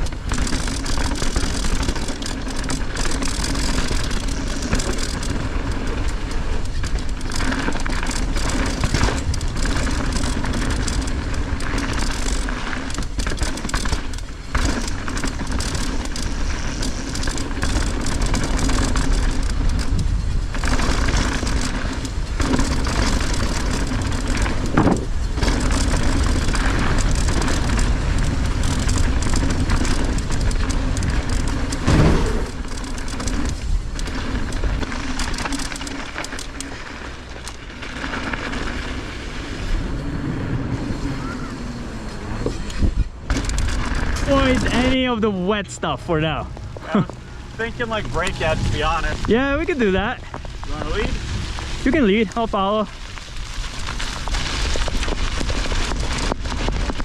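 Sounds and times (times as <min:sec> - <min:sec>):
bike rattling: 0:00.0 - 0:57.0
bike tyres rumbling on dirt: 0:00.0 - 0:57.0
wind on microphone: 0:18.3 - 0:32.7, 0:46.5 - 0:52.0.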